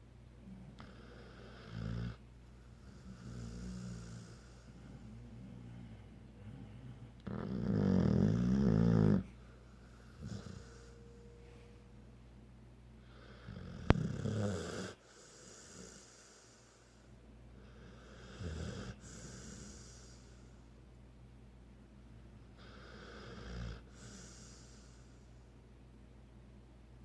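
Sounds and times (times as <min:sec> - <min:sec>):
loud snoring: 0:00.8 - 0:02.2, 0:02.9 - 0:04.7, 0:07.2 - 0:09.4, 0:10.2 - 0:11.0, 0:13.2 - 0:16.4, 0:17.9 - 0:20.1, 0:22.6 - 0:24.8.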